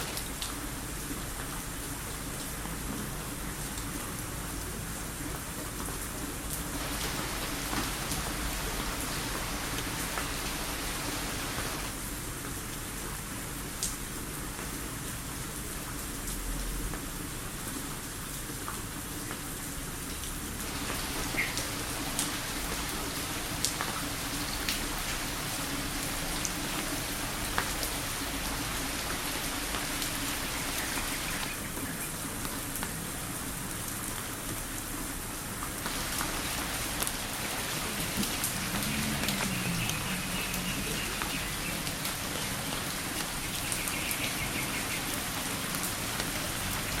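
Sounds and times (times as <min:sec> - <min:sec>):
steady rain falling: 0:00.0 - 0:47.0
raindrops ticking: 0:06.5 - 0:12.0, 0:20.1 - 0:33.1, 0:35.7 - 0:47.0.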